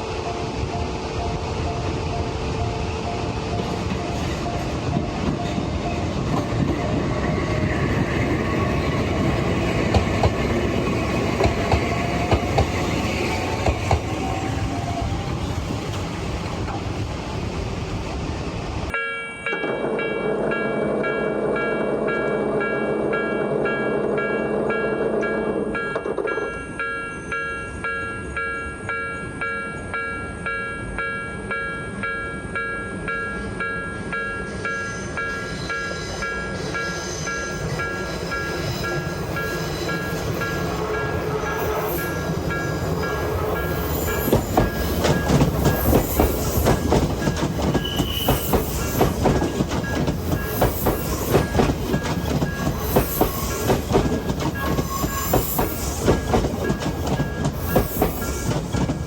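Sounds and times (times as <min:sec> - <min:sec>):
level crossing warning bell: 0:00.2 - 0:06.4, 0:18.9 - 0:53.4, 0:54.0 - 0:58.2
train wheels clacking over rail joints: 0:03.6 - 0:14.5, 0:37.6 - 0:59.0.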